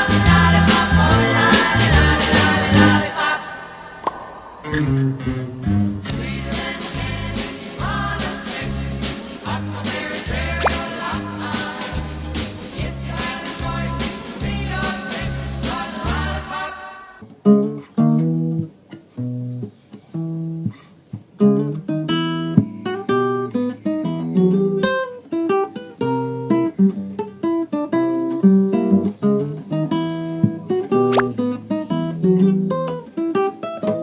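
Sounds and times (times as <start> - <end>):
acoustic guitar playing: 4.4 - 6.2, 17.2 - 34.0.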